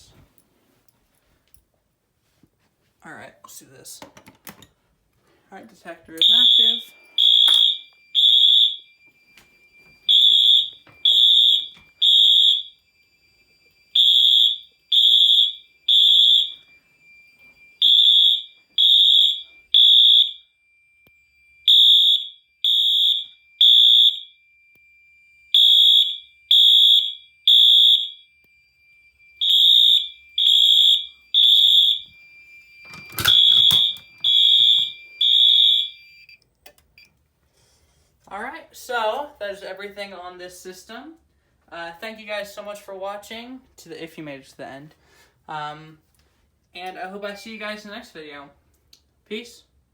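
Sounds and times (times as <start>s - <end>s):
faint steady high tone: 6.2s - 37.2s.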